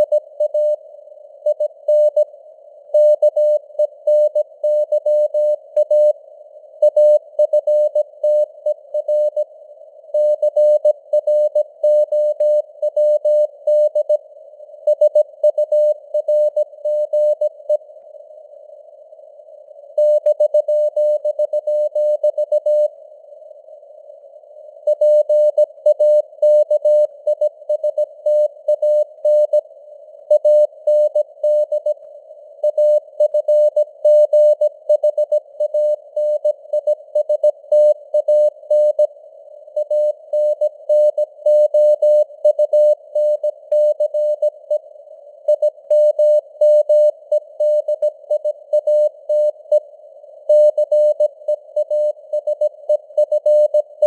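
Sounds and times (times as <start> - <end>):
morse code beeps: 50.5 - 54.0.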